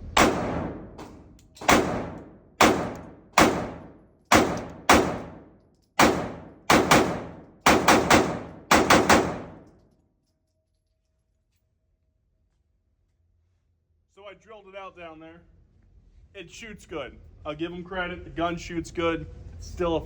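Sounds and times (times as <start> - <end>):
pistol shots echoing: 0.0 - 9.7.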